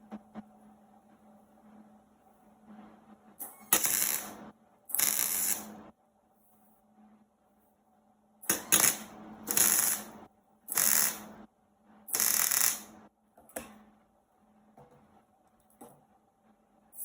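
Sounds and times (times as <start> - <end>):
faint steady hum: 0.0 - 17.0
welder crackling: 3.8 - 5.8, 8.5 - 11.4, 12.1 - 12.9.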